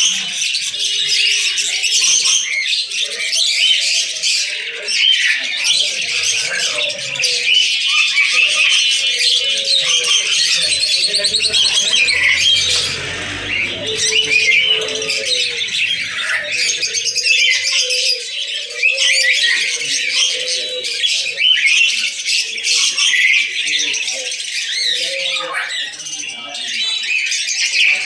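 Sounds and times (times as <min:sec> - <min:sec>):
caged birds chirping and squawking: 0:00.0 - 0:22.7.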